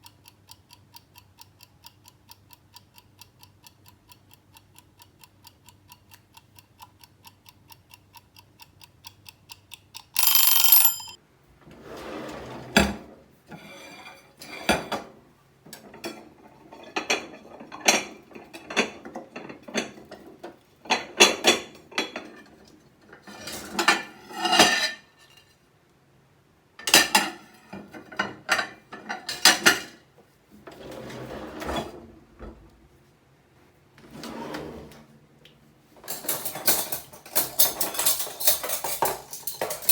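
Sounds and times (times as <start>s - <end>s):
kitchen timer ticking: 0.0s - 11.2s
timer bell ringing: 10.2s - 11.2s
cupboard opening and closing: 11.6s - 15.1s, 30.6s - 32.9s, 34.0s - 35.1s.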